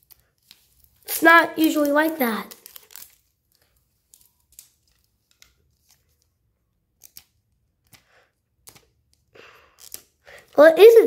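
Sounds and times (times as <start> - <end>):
wrapping crinkling: 0.0 - 8.0, 8.6 - 11.0
plastic clicks: 6.9 - 10.2.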